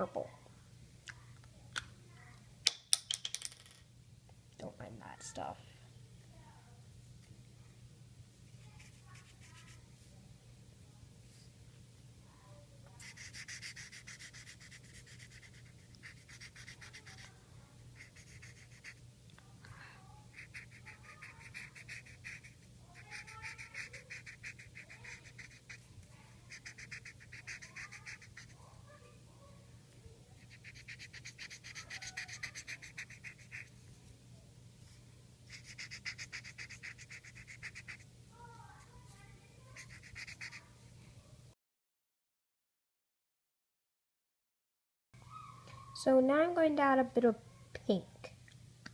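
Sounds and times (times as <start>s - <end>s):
marker rubbing on paper: 8.5s - 9.8s, 13.0s - 17.3s, 18.0s - 19.0s, 20.3s - 25.9s, 26.5s - 28.6s, 30.4s - 33.8s, 35.5s - 38.0s, 39.8s - 40.6s.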